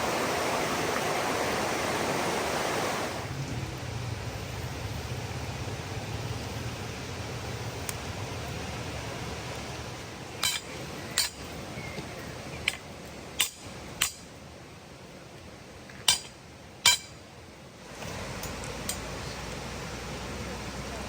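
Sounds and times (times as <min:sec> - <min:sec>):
waterfall rushing: 0:00.0 - 0:11.7.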